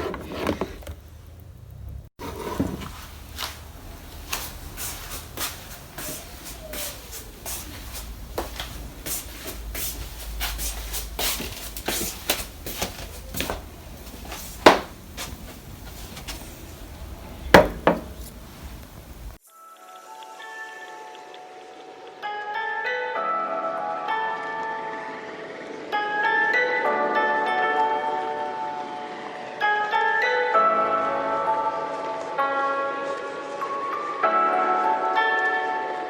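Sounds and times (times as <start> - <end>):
objects handled and set down: 0.0 - 1.0, 2.2 - 3.6, 11.3 - 16.6, 17.5 - 19.0
sharp knocks: 17.6 - 18.3.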